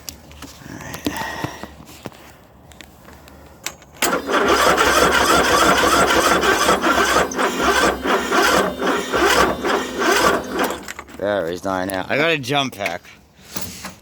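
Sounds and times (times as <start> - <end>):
engine cranking on starter: 4.0 - 11.3.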